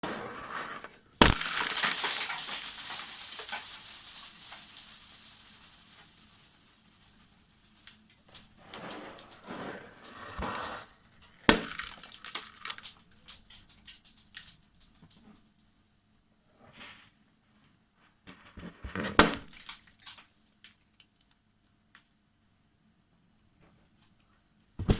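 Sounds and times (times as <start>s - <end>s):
crackles: 0.1s - 16.0s, 18.4s - 22.2s
sharp pops: 1.2s - 4.7s
balloon bursting: 1.2s - 5.9s.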